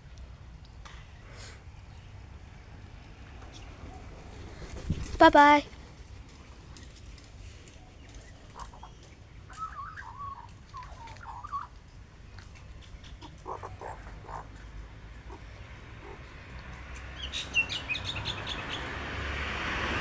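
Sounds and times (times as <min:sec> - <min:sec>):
birds warbling: 0:07.9 - 0:19.0
birds clucking: 0:08.0 - 0:19.0.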